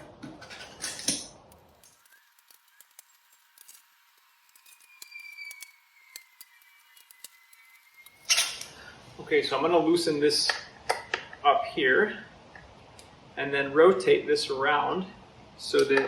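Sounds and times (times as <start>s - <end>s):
thin high whistle: 1.9s - 3.3s, 4.5s - 8.6s.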